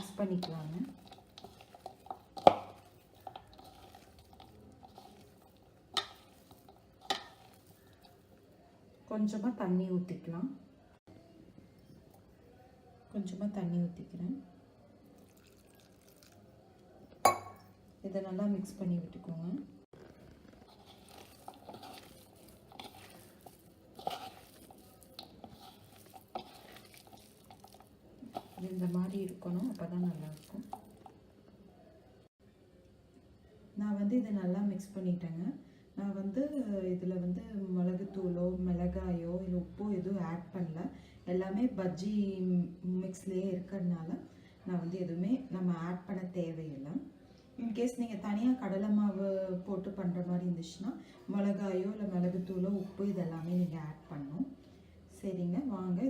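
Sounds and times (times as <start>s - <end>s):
batter stirring and squishing: 0.0s - 8.8s, 15.1s - 17.0s, 19.9s - 31.9s
wet mixing in a bowl: 0.0s - 9.0s, 15.0s - 17.4s, 19.9s - 31.7s.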